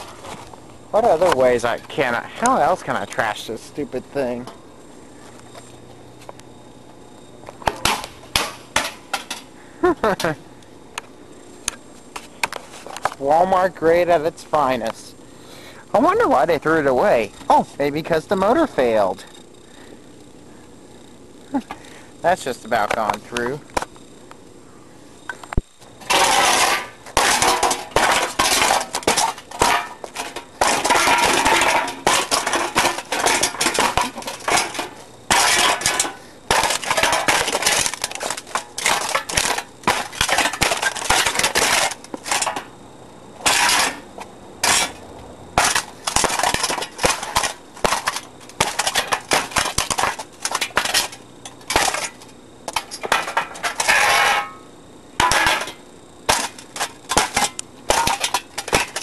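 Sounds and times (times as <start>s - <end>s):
metal clattering and rattling: 26.0s - 42.7s, 44.6s - 45.0s, 45.6s - 54.6s.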